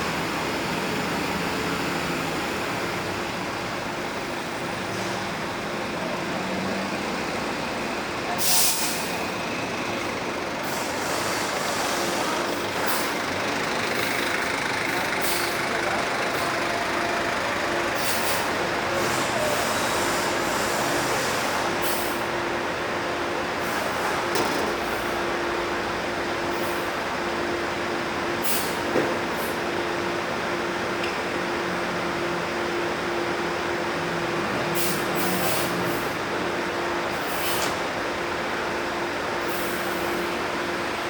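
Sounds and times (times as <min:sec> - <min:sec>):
bus engine running: 0:00.0 - 0:41.0
air brake hiss: 0:08.4 - 0:09.2, 0:18.0 - 0:22.2, 0:28.4 - 0:28.8, 0:37.2 - 0:37.8.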